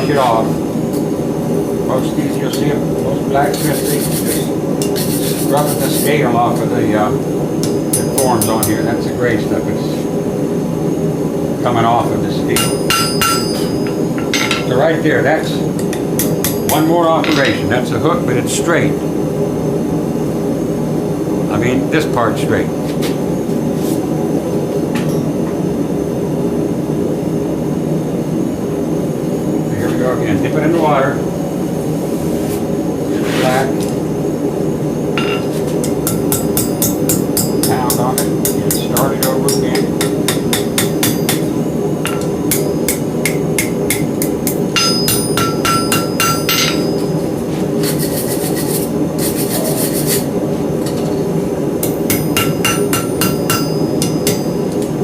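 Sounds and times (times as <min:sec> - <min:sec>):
hammer striking steel on anvil: 0:07.6 - 0:08.9, 0:12.6 - 0:14.7, 0:15.8 - 0:17.7, 0:35.2 - 0:47.2, 0:51.8 - 0:54.8
forge droning: 0:32.6 - 0:55.0.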